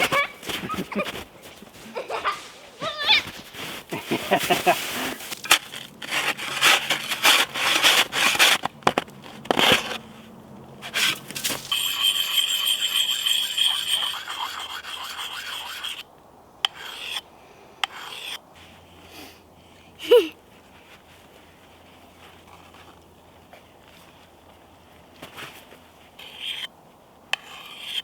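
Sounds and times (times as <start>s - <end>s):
wood rubbing and scraping: 0.0s - 16.0s.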